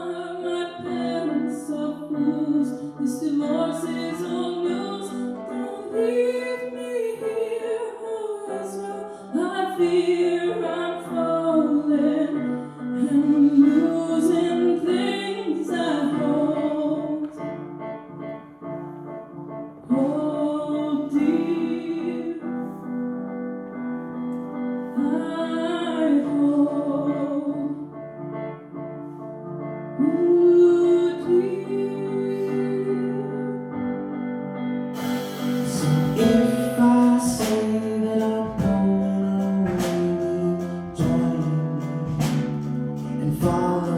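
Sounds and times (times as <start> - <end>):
sustained keyboard chords: 34.8 - 43.9.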